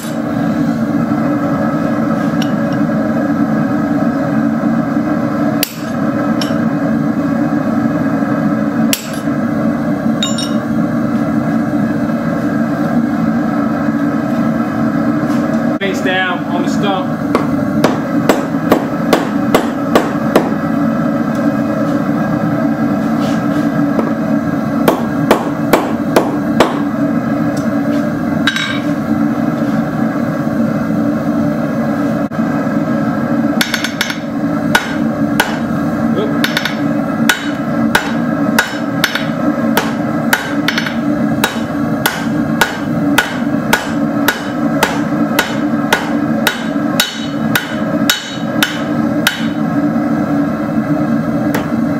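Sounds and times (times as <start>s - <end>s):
steady low hum: 0.0s - 51.9s
hammer striking steel on anvil: 5.6s - 6.6s, 8.9s - 9.3s, 10.2s - 10.7s, 17.3s - 20.5s, 28.5s - 28.9s, 33.6s - 35.6s, 36.4s - 49.6s.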